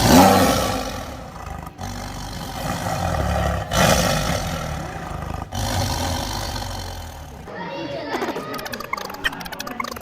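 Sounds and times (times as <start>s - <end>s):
large animal roaring: 0.0s - 7.5s.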